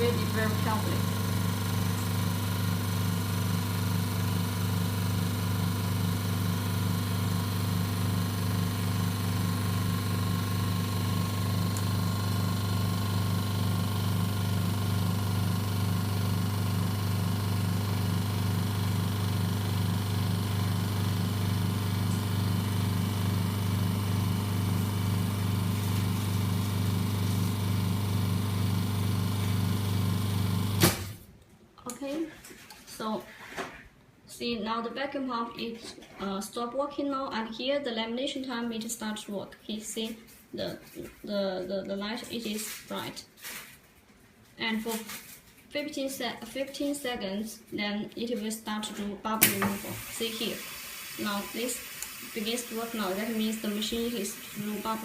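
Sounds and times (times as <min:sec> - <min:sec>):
vacuum pump humming: 0:00.0 - 0:31.3, 0:49.4 - 0:55.0.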